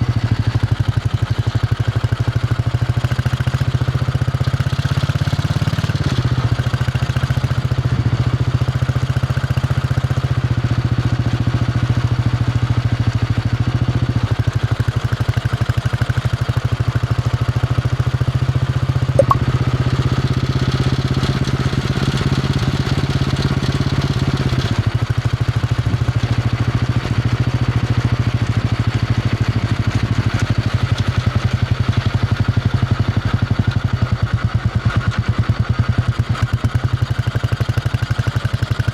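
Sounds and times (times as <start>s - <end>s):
short sharp tick: 19.2s - 19.4s.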